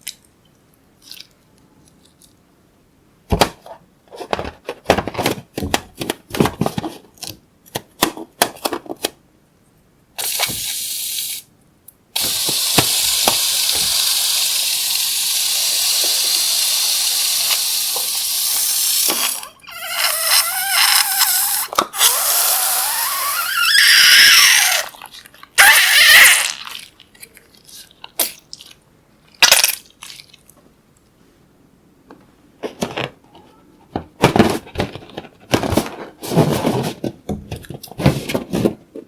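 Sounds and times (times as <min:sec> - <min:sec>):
air hissing out of balloon: 0:10.2 - 0:11.5, 0:12.2 - 0:24.8
balloon neck squealing: 0:19.2 - 0:25.0, 0:25.6 - 0:26.6.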